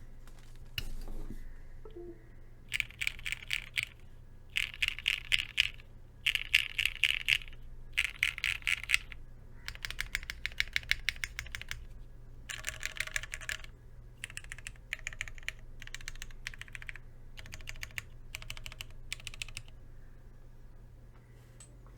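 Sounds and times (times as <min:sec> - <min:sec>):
rapid keyboard typing: 0:02.7 - 0:11.9, 0:12.5 - 0:19.8.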